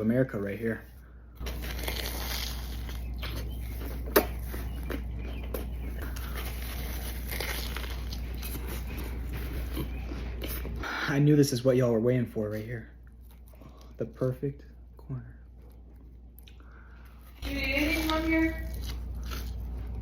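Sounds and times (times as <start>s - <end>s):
low hum: 0.0s - 20.0s
food crunching: 0.3s - 11.0s, 12.5s - 14.6s, 15.4s - 20.0s
chewing with wet mouth sounds: 1.4s - 10.9s, 12.9s - 14.2s, 15.4s - 20.0s.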